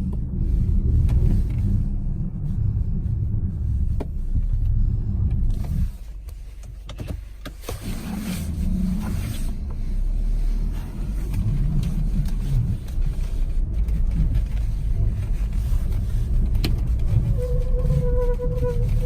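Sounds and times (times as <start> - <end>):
low road rumble: 0.0 - 19.0
car whistle with overtones: 17.3 - 19.0.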